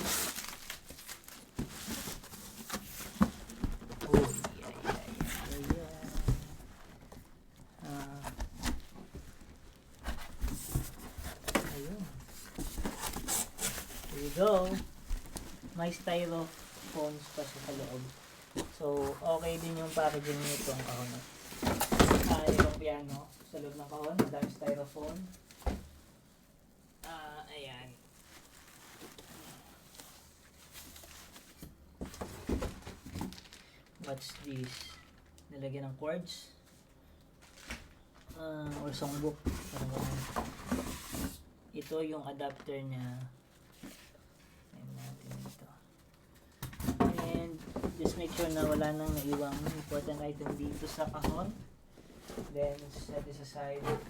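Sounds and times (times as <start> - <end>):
cardboard rustling and tearing: 0.0 - 23.3
rustling styrofoam and cardboard: 0.0 - 35.3, 36.8 - 41.5, 43.0 - 54.0.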